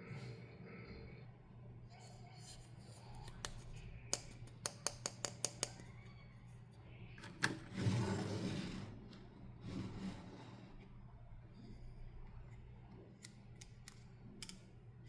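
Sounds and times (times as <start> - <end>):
plastic packaging clicks and taps: 3.4 - 5.8.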